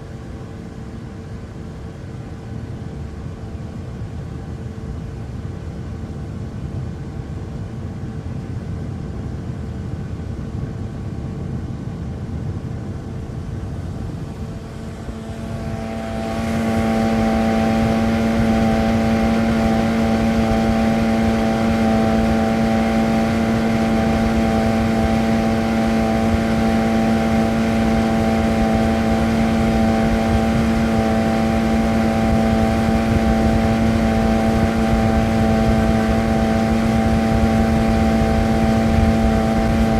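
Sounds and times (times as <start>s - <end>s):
motorboat engine running: 13.3s - 39.9s.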